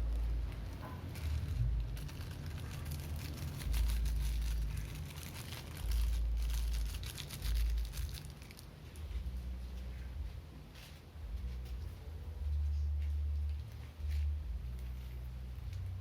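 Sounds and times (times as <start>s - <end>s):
plastic packaging crinkling: 0.0s - 9.1s
low rumbles on microphone: 0.0s - 16.0s.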